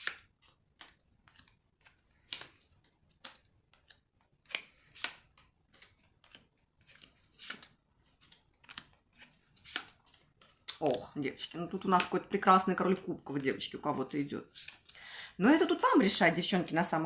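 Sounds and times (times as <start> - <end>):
cards being shuffled: 0.0 - 12.3, 13.4 - 15.0.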